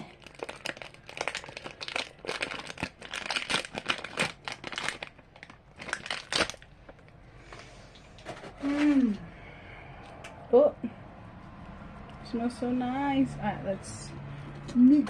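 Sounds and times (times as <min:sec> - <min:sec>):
plastic packaging crinkling: 0:00.0 - 0:07.1.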